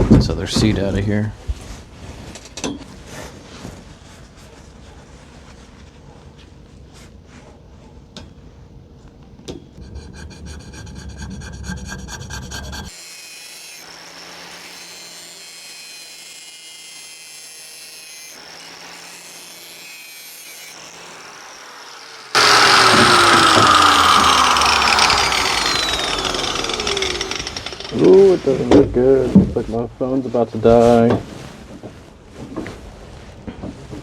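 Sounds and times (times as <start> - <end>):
loud power tool: 9.9 - 28.7.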